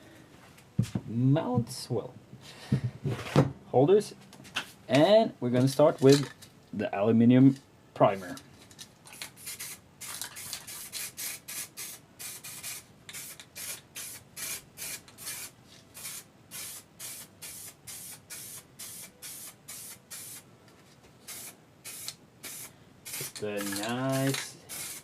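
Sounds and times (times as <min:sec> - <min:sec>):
aerosol can spraying: 0:09.2 - 0:20.4, 0:21.2 - 0:25.0.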